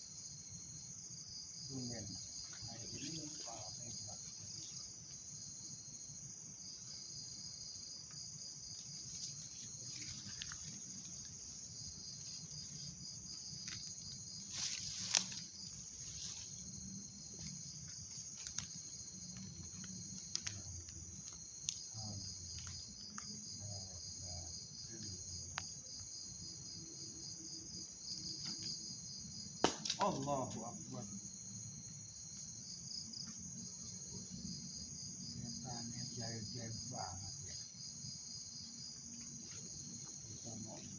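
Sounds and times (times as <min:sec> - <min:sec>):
insects chirping: 0:00.0 - 0:40.9
rustle: 0:01.8 - 0:26.4.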